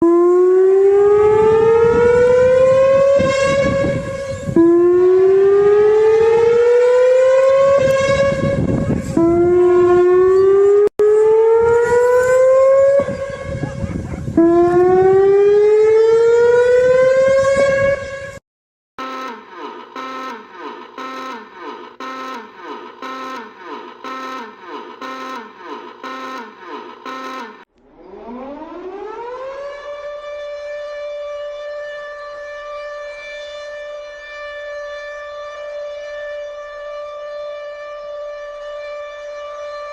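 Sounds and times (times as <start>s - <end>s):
rising siren alarm tone: 0.0s - 18.4s, 19.0s - 39.9s
buzzy alarm tone: 19.0s - 27.7s.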